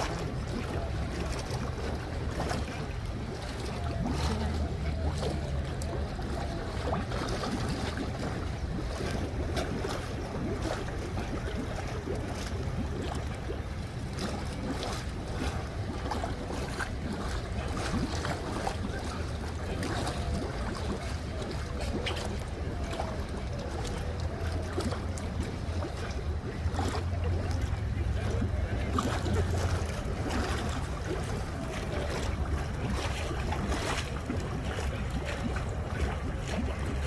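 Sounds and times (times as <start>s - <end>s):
wind rumble on microphone: 0.0s - 37.0s.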